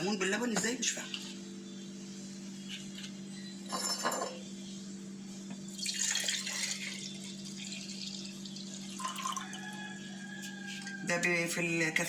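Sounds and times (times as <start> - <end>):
liquid pouring into a mug: 5.8 - 9.7.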